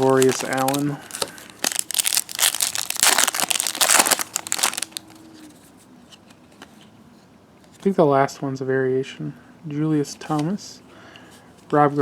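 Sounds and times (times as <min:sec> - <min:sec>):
foil wrapper crinkling: 0:00.0 - 0:05.1.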